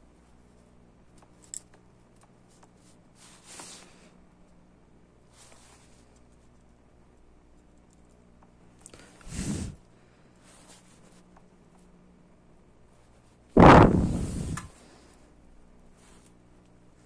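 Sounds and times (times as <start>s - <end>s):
low steady hum: 0.0s - 17.0s
small handling clicks: 1.1s - 2.8s.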